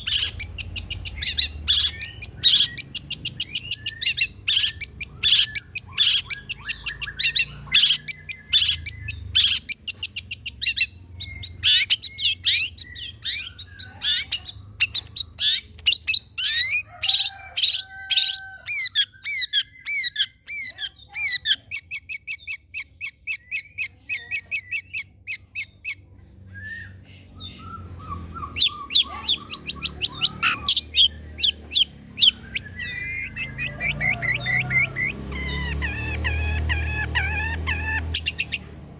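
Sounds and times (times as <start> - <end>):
bird chattering song: 0.0 - 38.9.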